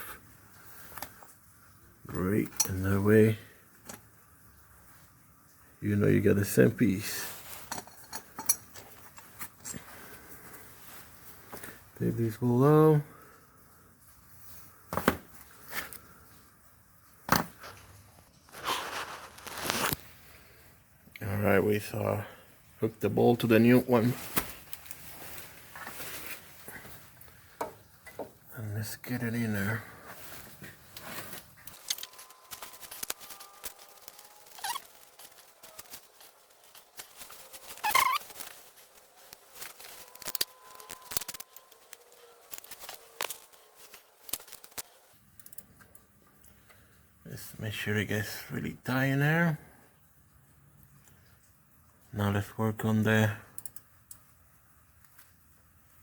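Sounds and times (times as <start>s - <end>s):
metallic clicks of tools handled: 7.6s - 9.8s
rustling scrape: 18.4s - 20.5s, 24.0s - 27.2s, 29.6s - 45.1s
short squeak: 37.8s - 38.3s.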